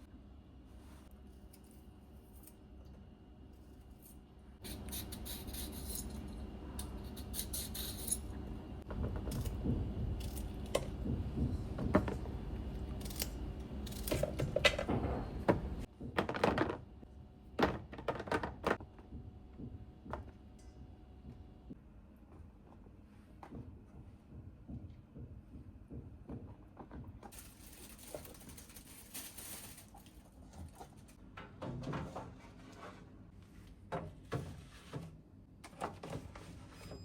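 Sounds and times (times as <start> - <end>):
packaging rustling: 27.3 - 31.2.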